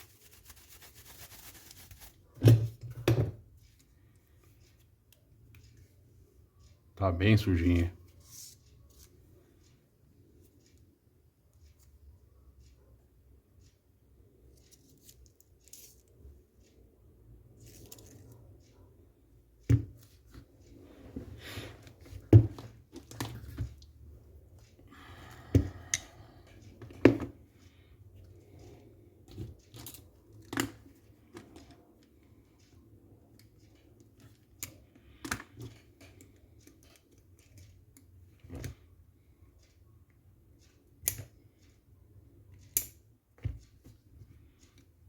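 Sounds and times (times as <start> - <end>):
small parts clicking and scraping: 14.5 - 16.8, 17.6 - 18.7, 27.6 - 38.1.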